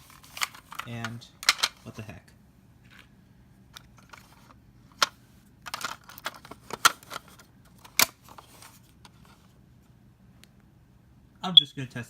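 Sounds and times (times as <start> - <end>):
plastic clicks and rattles: 0.2 - 1.8, 3.8 - 9.2.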